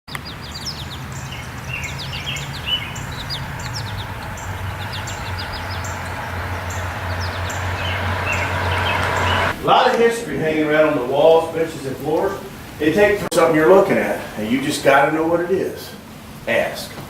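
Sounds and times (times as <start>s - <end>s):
small birds chirping: 0.1s - 9.6s
low hum: 0.2s - 9.6s.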